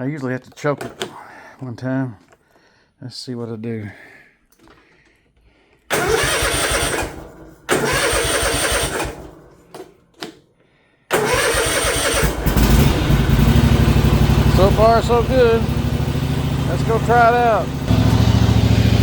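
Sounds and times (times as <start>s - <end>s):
mower engine running: 5.9s - 9.4s, 11.1s - 19.0s
engine electric starter cranking: 5.9s - 10.4s, 11.1s - 19.0s.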